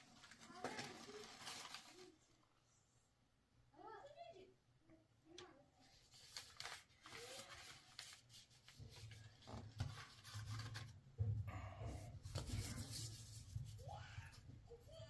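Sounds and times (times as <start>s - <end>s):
faint rubbing and scraping: 5.8s - 15.0s.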